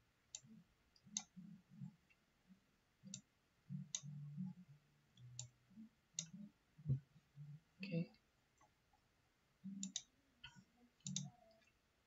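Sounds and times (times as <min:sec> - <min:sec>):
computer mouse clicking: 0:09.8 - 0:11.7.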